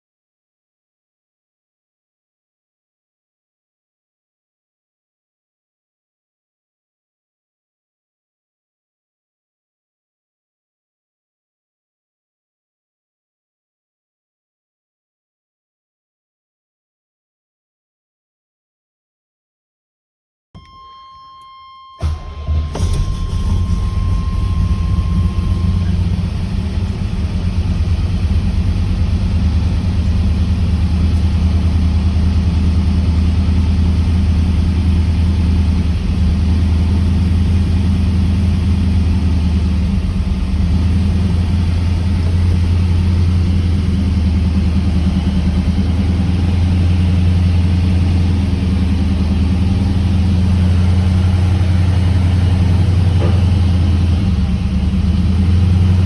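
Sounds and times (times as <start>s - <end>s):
car engine running: 22.0s - 56.0s.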